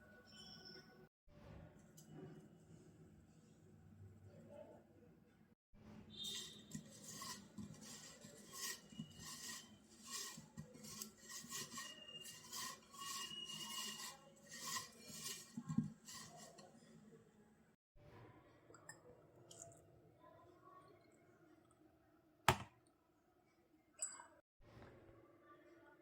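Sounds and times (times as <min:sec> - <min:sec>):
scraping strokes of food preparation: 0:06.2 - 0:17.3.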